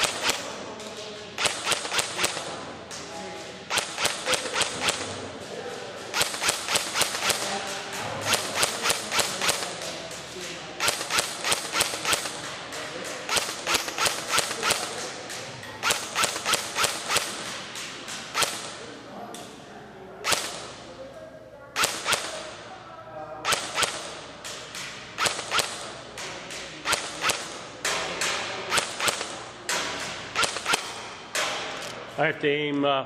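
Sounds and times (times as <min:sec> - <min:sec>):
airsoft gun shots cracking: 0:00.0 - 0:00.5, 0:01.4 - 0:02.5, 0:03.7 - 0:05.2, 0:06.1 - 0:09.9, 0:10.8 - 0:12.5, 0:13.2 - 0:15.0, 0:15.8 - 0:18.8, 0:20.2 - 0:20.8, 0:21.8 - 0:22.5, 0:23.4 - 0:24.2, 0:25.2 - 0:25.9, 0:26.8 - 0:31.8.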